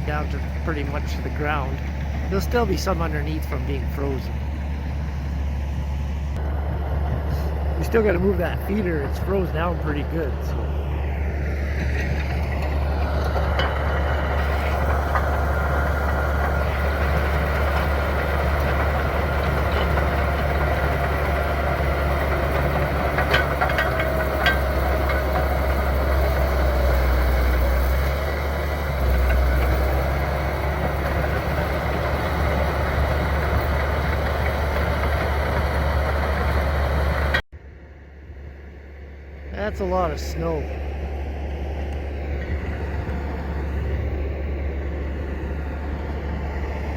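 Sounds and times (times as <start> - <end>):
bulldozer diesel engine running: 0.0 - 46.9.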